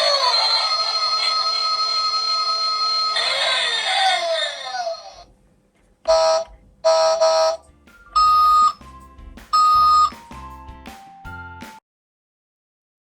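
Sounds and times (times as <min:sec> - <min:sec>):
loud pitched toy beeps: 0:00.4 - 0:04.2, 0:06.1 - 0:08.8, 0:09.5 - 0:10.2
tune-like electronic tones: 0:08.2 - 0:08.8.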